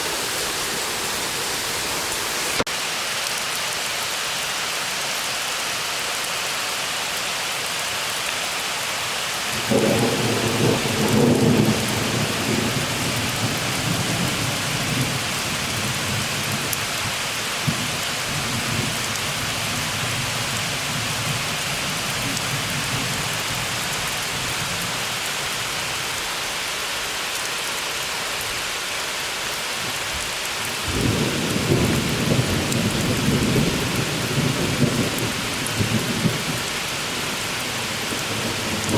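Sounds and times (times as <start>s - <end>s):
steady rain falling: 0.0s - 38.9s
thunder rumbling: 9.6s - 15.1s.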